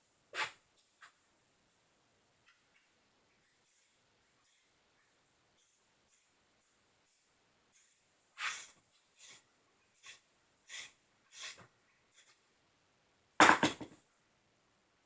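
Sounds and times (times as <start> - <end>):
clatter of sharp knocks: 13.4 - 14.0.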